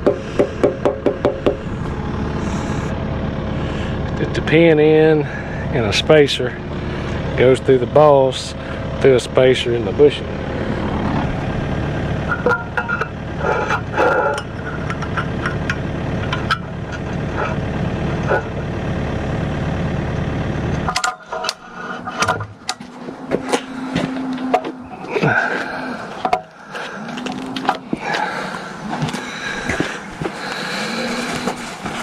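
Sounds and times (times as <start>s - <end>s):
metal clanks and knocks: 0.0s - 1.7s, 12.2s - 18.7s, 20.8s - 25.5s, 26.2s - 26.6s, 27.2s - 28.2s
excavator diesel engine running: 0.0s - 32.0s.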